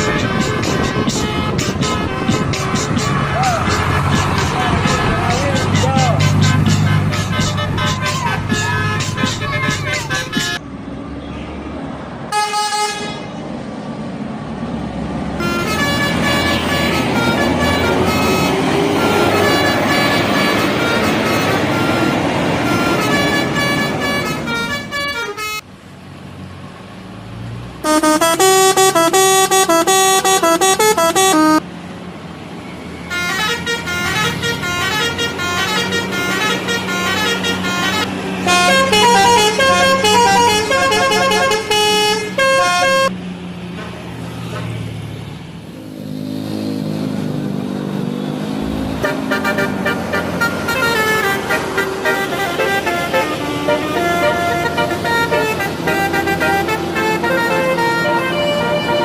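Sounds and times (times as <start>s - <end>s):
bus horn playing a melody: 0.0s - 10.6s, 12.3s - 13.4s, 15.4s - 25.6s, 27.8s - 31.6s, 33.1s - 43.2s, 48.6s - 59.0s
bus engine rumbling: 0.0s - 59.0s.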